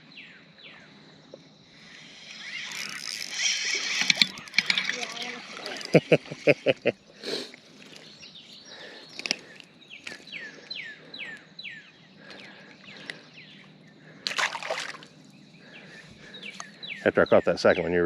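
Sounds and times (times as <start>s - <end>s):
bird singing: 0.0s - 18.0s
creek water flowing: 14.2s - 15.2s.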